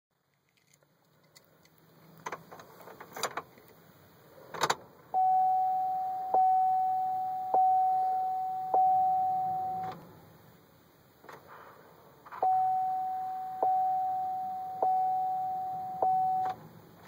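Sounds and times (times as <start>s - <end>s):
dashboard warning chime dinging: 5.1s - 10.0s, 12.4s - 16.6s.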